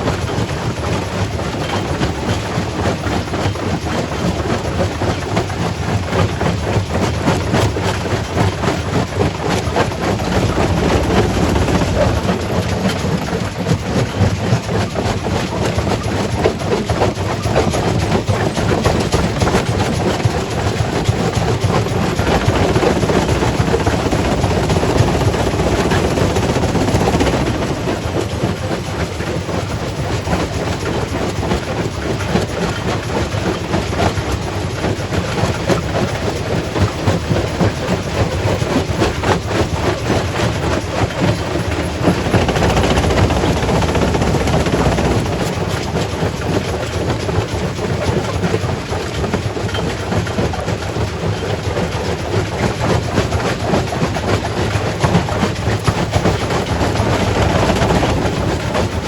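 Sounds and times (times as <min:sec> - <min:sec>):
rock crusher drone: 0:09.3 - 0:14.4, 0:21.0 - 0:29.5, 0:40.8 - 0:46.7, 0:55.8 - 0:59.0.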